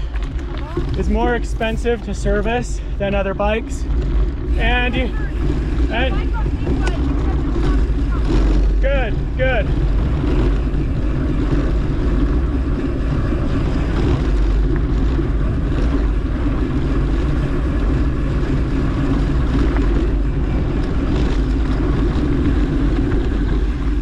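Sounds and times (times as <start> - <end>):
tyres rolling over dirt: 0.0 - 24.0
wind buffeting microphone: 0.0 - 24.0.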